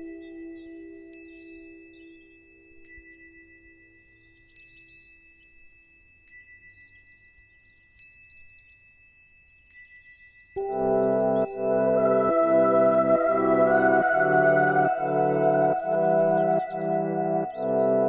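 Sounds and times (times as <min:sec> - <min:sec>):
high twittering chirps: 0:10.6 - 0:18.0
steady high tones: 0:10.6 - 0:18.0
deep chime note: 0:10.7 - 0:18.0.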